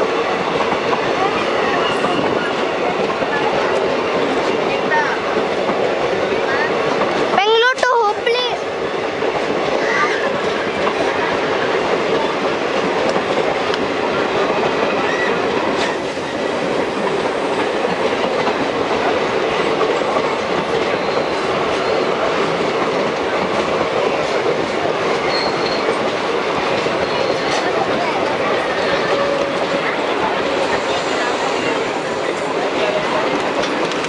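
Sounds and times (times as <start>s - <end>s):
train wheels clickety-clack: 0.0s - 34.0s
high wheel squeal: 25.2s - 26.0s.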